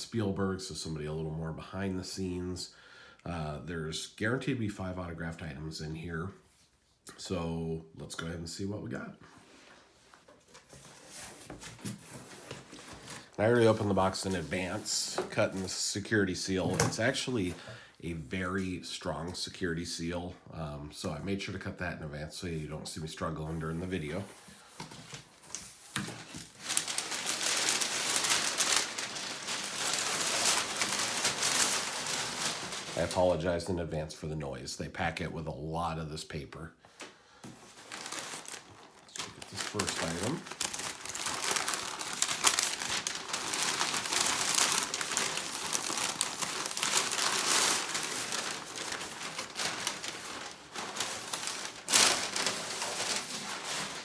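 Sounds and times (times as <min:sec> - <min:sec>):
packing paper crinkling: 0:10.4 - 0:15.9, 0:23.5 - 0:33.6, 0:37.5 - 0:54.0.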